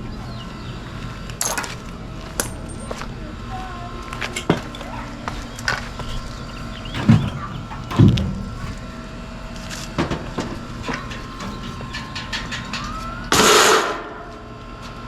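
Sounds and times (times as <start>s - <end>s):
clunks and knocks: 4.1s - 13.1s.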